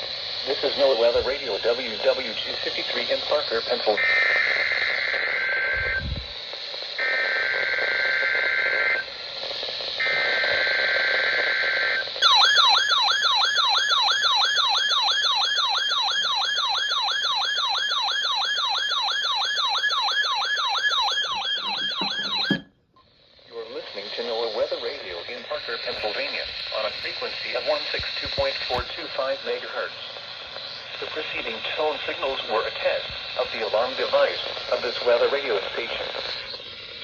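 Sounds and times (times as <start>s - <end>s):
radio hiss: 0.0s - 12.2s, 23.0s - 37.0s
raspy two-tone data buzz: 0.0s - 14.4s, 20.9s - 37.0s
warbling alert tone: 21.3s - 22.7s.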